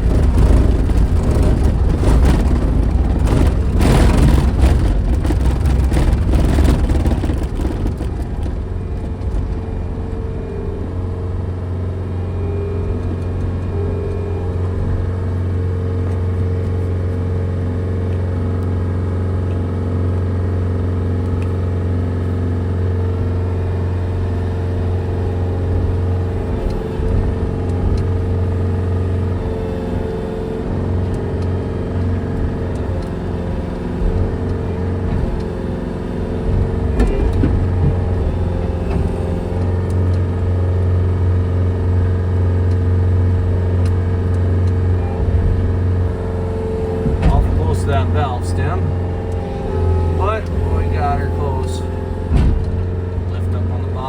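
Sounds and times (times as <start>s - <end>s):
vehicle engine running: 0.0s - 54.0s.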